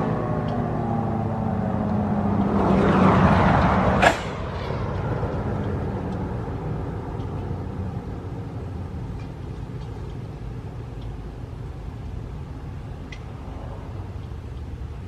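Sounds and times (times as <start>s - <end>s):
siren winding down: 0.0s - 3.9s
rushing noise: 0.0s - 8.8s.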